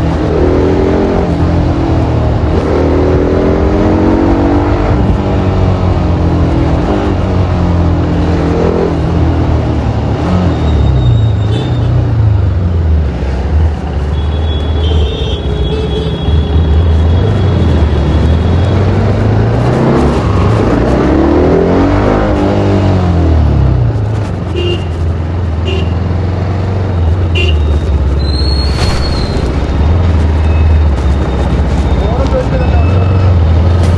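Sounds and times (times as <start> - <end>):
motorcycle engine: 13.7 - 33.9.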